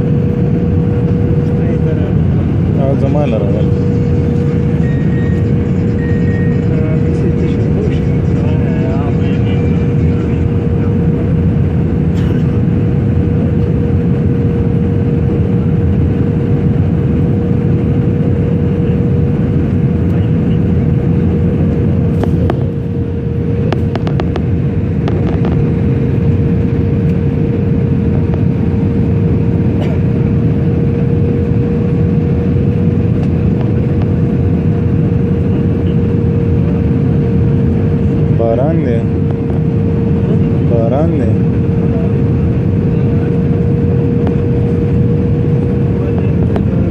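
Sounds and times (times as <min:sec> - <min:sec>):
steady hum-like tone: 0:00.0 - 0:14.7
airliner cabin rumble: 0:00.0 - 0:46.9.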